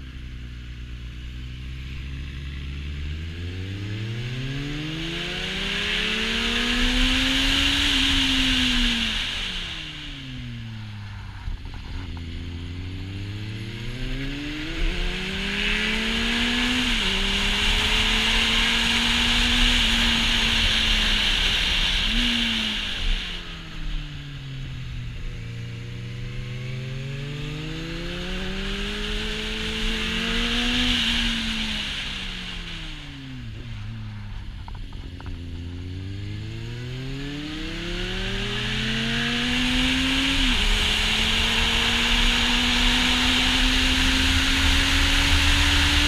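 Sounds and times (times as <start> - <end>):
motorcycle engine revving: 0.0 - 46.0
wind rushing over camera: 6.6 - 25.1.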